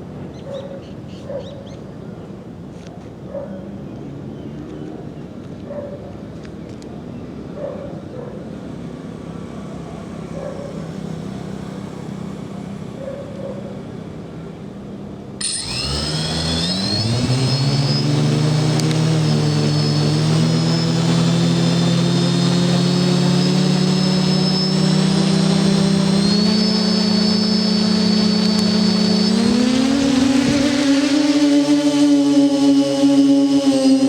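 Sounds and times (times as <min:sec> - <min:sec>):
model aircraft motor whine: 0:15.4 - 0:34.0.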